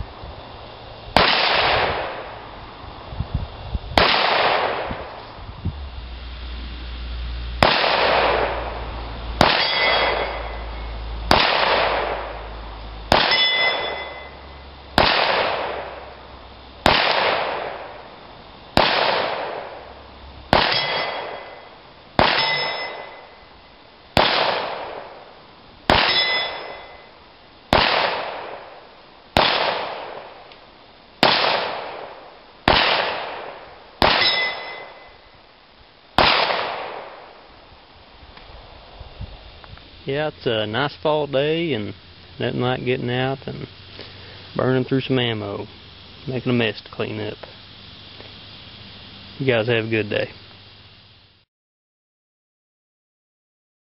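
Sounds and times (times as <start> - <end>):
pistol shots: 1.2 - 2.3, 4.0 - 5.0, 7.6 - 8.8, 9.4 - 10.6, 11.3 - 12.4, 13.1 - 14.3, 15.0 - 16.0, 16.8 - 18.0, 18.8 - 19.8, 20.5 - 21.6, 22.2 - 23.2, 24.2 - 25.2, 25.9 - 27.0, 27.7 - 28.8, 29.4 - 30.5, 31.2 - 35.1, 36.2 - 37.3
steel plate clanging: 9.4 - 11.0, 13.2 - 14.6, 20.6 - 23.4, 25.9 - 27.2, 34.1 - 35.2.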